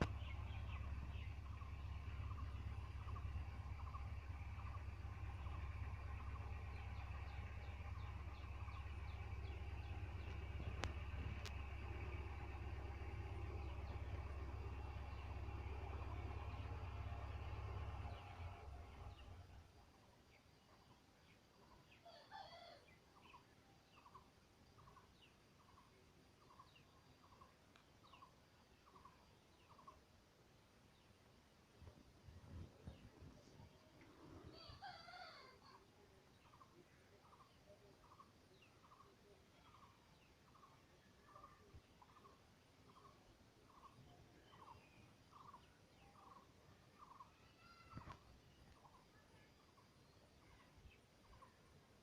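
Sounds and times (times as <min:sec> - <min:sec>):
birds calling: 0:00.0 - 0:19.5
steady low rumble: 0:00.0 - 0:19.9
faint bird calls: 0:32.6 - 0:52.0.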